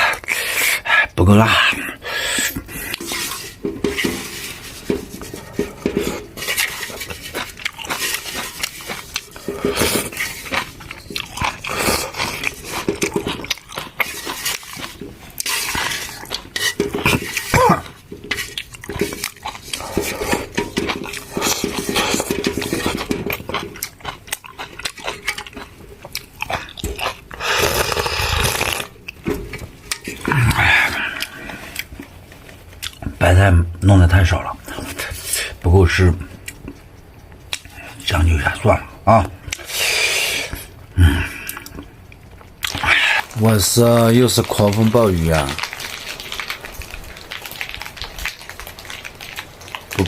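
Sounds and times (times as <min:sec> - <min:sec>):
utensils scraping a pot: 0:02.3 - 0:23.8
chewing: 0:02.3 - 0:33.2, 0:39.4 - 0:50.0.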